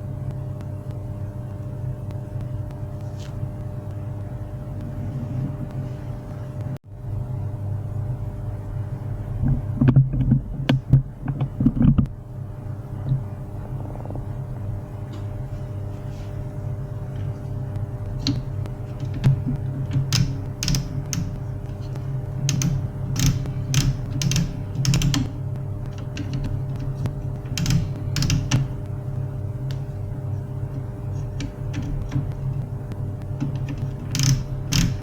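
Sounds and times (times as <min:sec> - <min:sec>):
laser printer motor hum: 0:08.0 - 0:35.0
printer mechanism clicks and creaks: 0:18.2 - 0:21.4, 0:22.4 - 0:25.3, 0:25.9 - 0:28.8, 0:31.2 - 0:32.5, 0:33.4 - 0:35.0.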